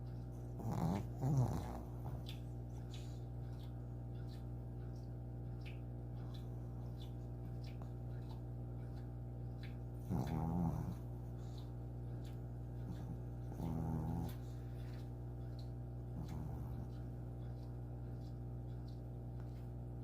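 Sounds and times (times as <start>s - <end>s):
steady low hum: 0.0s - 20.0s
dog snoring: 0.5s - 2.4s, 10.0s - 11.7s, 12.8s - 15.1s, 16.1s - 17.1s.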